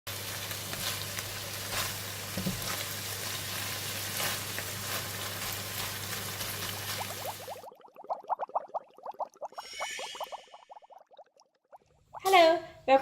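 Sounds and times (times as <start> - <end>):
food sizzling in hot oil: 0.1 - 7.6, 9.6 - 10.6.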